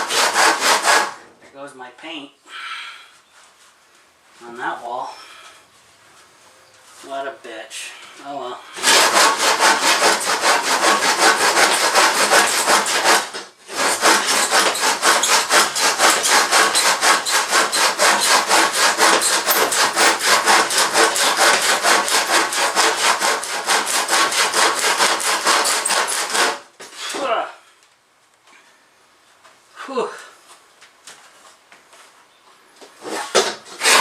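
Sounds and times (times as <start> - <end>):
handsaw cutting wood: 0.0 - 1.2, 8.8 - 27.1, 33.0 - 34.0.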